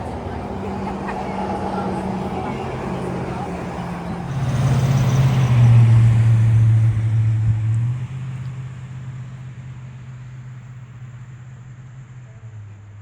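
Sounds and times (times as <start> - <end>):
vehicle engine humming: 0.0 - 13.0.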